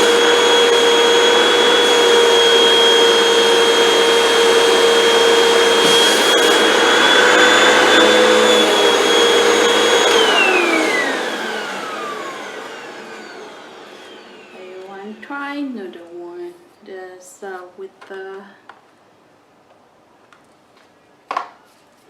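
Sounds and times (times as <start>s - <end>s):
vacuum cleaner whining: 0.0s - 16.4s.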